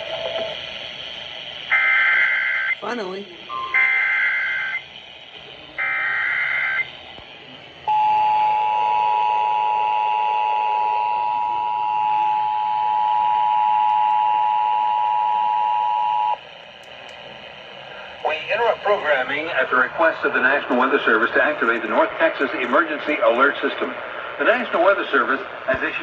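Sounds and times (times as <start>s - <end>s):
harsh two-tone attention signal: 3.4s - 4.8s.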